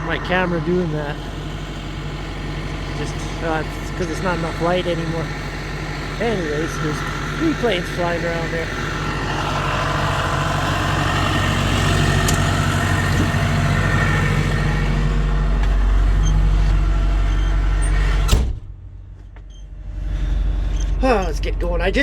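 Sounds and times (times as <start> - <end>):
swather engine drone: 0.0 - 22.0.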